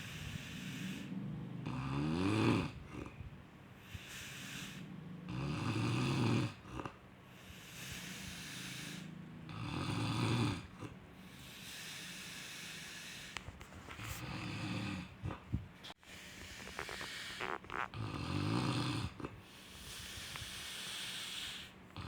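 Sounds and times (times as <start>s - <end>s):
hissing breath: 0.0s - 1.2s, 3.8s - 4.9s, 7.3s - 9.2s, 11.2s - 13.5s, 16.0s - 17.8s, 19.4s - 21.8s
loud low rasping snores: 0.0s - 13.4s, 14.2s - 15.4s, 16.1s - 22.0s.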